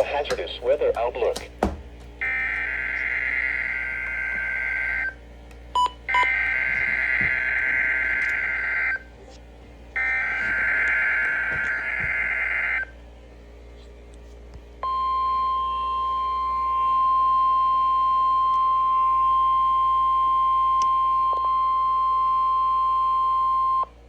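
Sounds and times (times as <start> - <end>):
receiver hiss: 2.2 - 5.2, 6.2 - 9.1, 10.0 - 12.9
steady warning alarm tone: 2.2 - 9.1, 10.0 - 13.0, 14.8 - 23.9.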